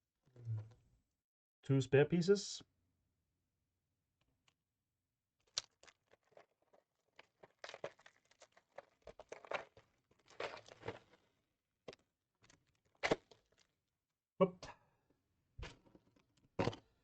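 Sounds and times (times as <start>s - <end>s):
plastic crinkling and rustling: 5.6s - 11.2s.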